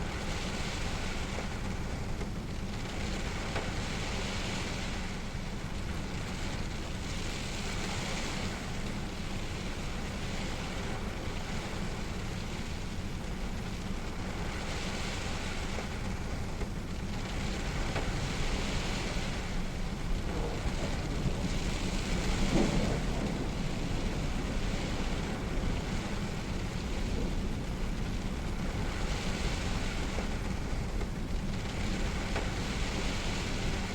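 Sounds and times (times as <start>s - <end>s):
steady rainfall: 0.0s - 33.9s
heavy low rumble: 19.1s - 33.9s.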